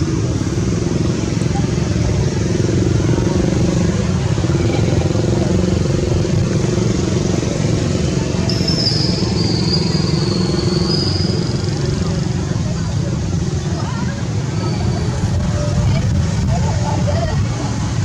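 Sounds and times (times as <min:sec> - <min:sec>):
motor engine droning: 0:00.0 - 0:13.6.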